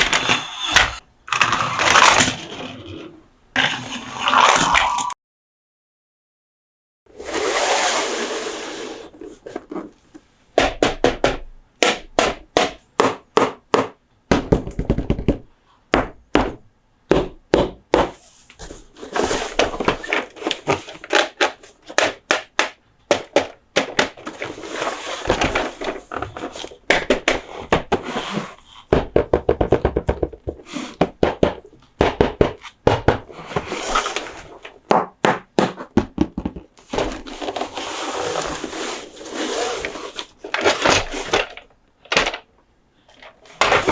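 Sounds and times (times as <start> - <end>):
fingers tapping toy trucks: 21.2 - 24.3
scratching and brushing: 36.9 - 41.3.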